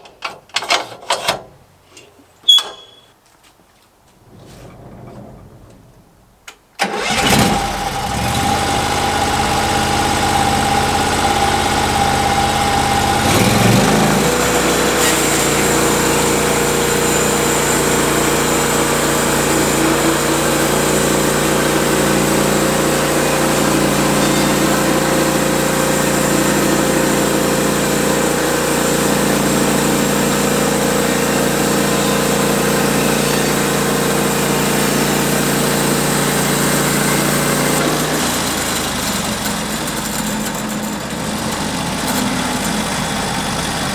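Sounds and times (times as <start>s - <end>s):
gasoline engine cranking and running: 6.7s - 43.9s.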